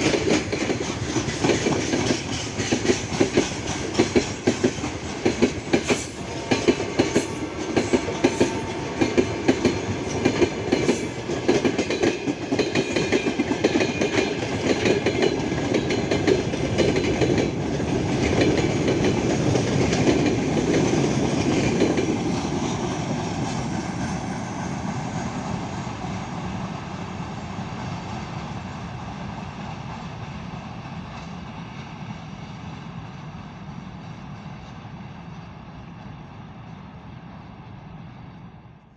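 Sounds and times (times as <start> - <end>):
train wheels clacking: 0.0 - 25.4
train rumble: 0.0 - 38.9.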